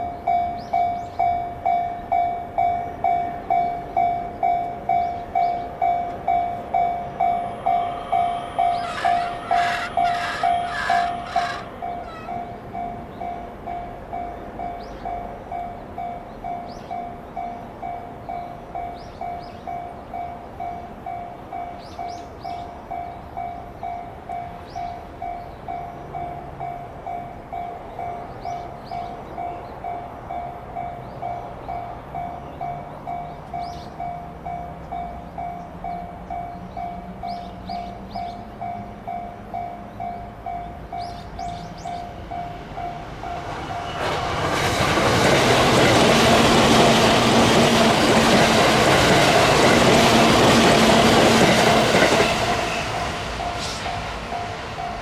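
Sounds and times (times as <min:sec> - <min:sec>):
level-crossing bell ringing: 0:00.0 - 0:24.6, 0:38.2 - 0:44.1
train rumble: 0:00.0 - 0:55.0.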